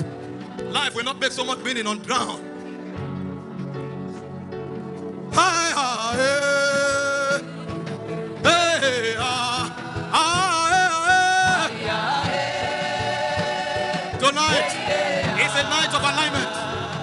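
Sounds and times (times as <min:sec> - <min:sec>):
sustained backing music: 0:00.0 - 0:17.0
wordless singing: 0:05.3 - 0:17.0.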